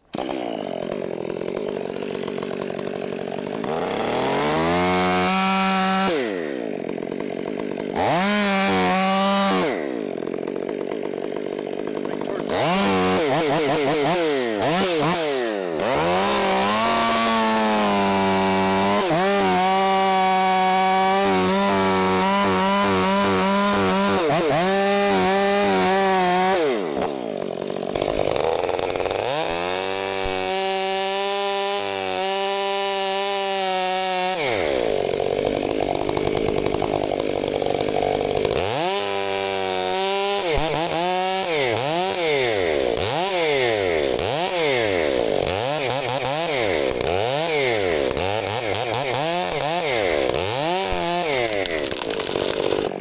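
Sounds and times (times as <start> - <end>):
chainsaw cutting wood: 0.0 - 53.0.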